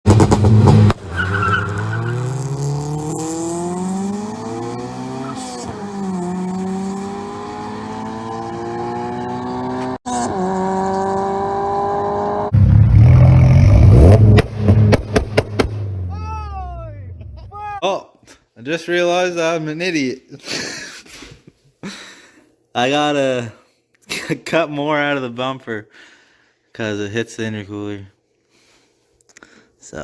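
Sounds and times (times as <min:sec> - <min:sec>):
car engine accelerating hard: 0:00.1 - 0:16.1.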